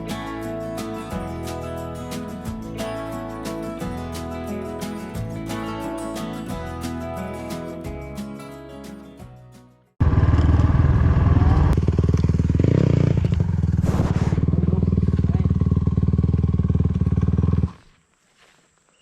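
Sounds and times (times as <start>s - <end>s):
background music: 0.0s - 9.9s
quad engine running loudly: 10.0s - 17.8s.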